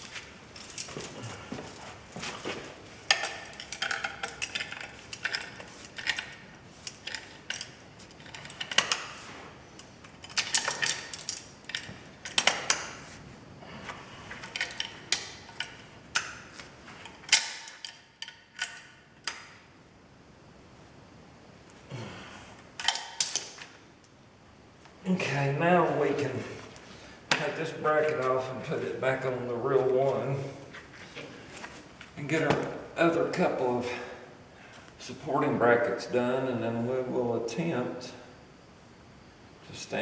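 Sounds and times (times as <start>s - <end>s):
hand tools clinking on metal: 0.1s - 9.1s.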